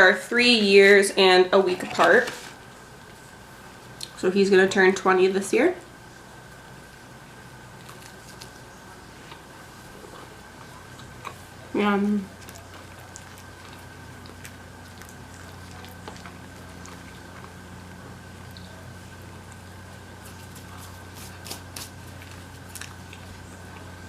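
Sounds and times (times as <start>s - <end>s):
low electrical hum: 0.0s - 24.0s
person chewing food: 7.7s - 11.6s, 12.3s - 24.0s.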